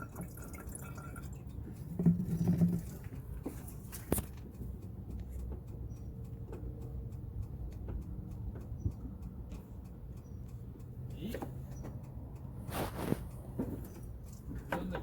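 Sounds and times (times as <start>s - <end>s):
faint light ticks: 3.2s - 12.6s.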